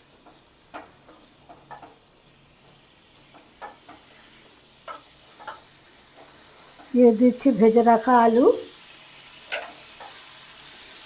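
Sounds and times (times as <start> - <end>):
faint sizzle: 0.0 - 11.0
spatula scraping in a pan: 9.4 - 11.0.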